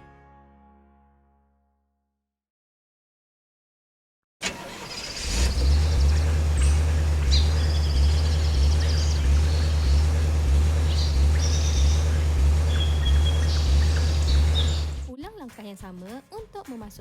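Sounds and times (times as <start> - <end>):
birds chirping: 5.2 - 15.1
low pulsing rumble: 5.4 - 15.1.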